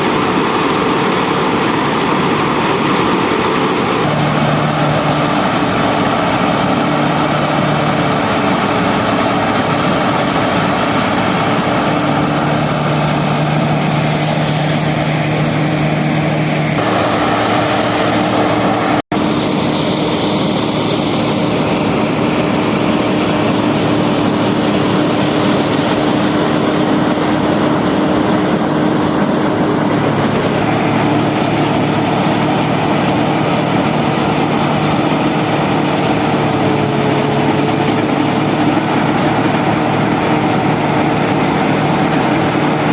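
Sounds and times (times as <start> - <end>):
harvester mechanical clatter: 0.0 - 42.9
tractor diesel engine running: 0.0 - 42.9.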